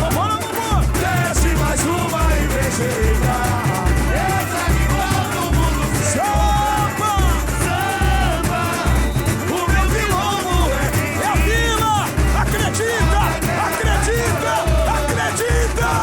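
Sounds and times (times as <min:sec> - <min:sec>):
backing chorus singing: 0:00.0 - 0:16.0
deep bass drums beating: 0:00.0 - 0:16.0
lead singer singing: 0:00.0 - 0:16.0
samba drum ensemble: 0:00.0 - 0:16.0.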